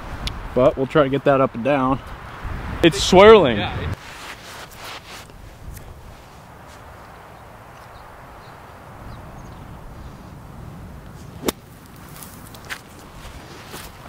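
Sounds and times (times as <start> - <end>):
wind rushing over microphone: 0.0 - 4.0, 5.2 - 14.0
golf club striking ball: 11.4 - 11.7.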